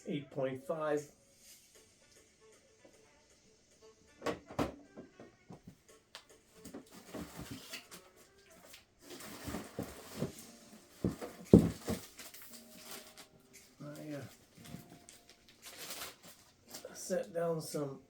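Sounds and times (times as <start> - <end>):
rustling: 6.6 - 17.0
hard plastic cases clacking: 11.0 - 12.3.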